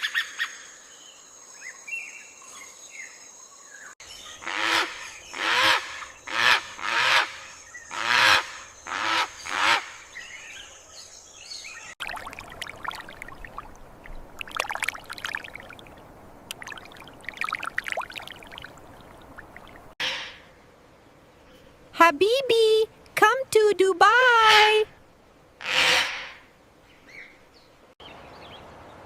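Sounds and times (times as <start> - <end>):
rushing water-like noise: 12.0 - 20.0.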